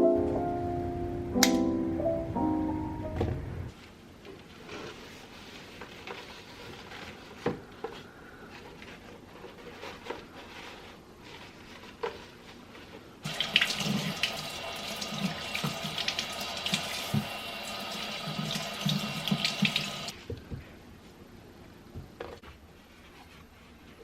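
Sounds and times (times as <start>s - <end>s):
tap running into sink: 13.3s - 17.4s, 18.4s - 20.1s.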